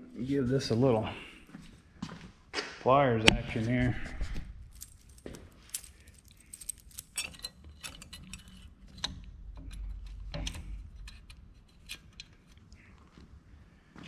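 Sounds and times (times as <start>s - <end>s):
metal chain clinking: 4.6s - 12.6s.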